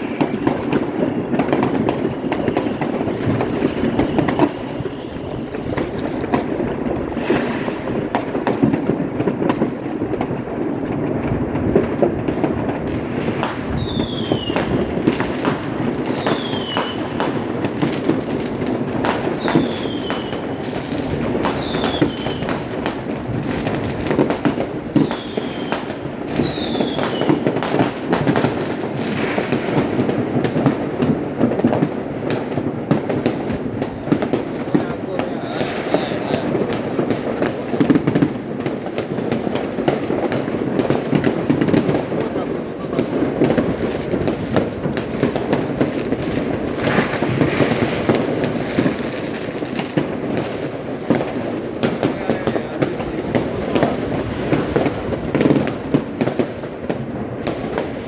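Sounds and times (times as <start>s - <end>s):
firecrackers crackling: 0.0s - 58.0s
falling firework whistles: 0.1s - 6.6s, 13.4s - 18.2s, 19.1s - 22.6s, 25.0s - 27.8s.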